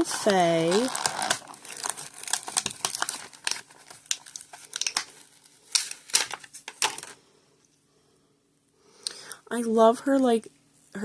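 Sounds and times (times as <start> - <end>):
plastic packaging crinkling: 0.0 - 7.2.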